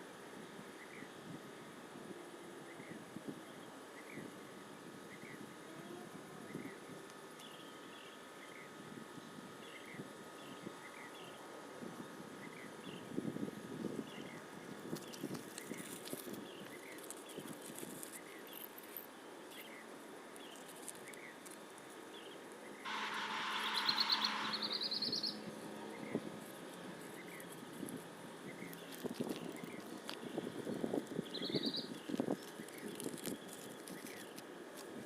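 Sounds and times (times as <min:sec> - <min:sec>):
faint bird chirps: 0:22.2 - 0:26.2, 0:31.3 - 0:34.3
rising bird trill: 0:22.9 - 0:25.6
harsh buzzing bird call: 0:22.9 - 0:26.2.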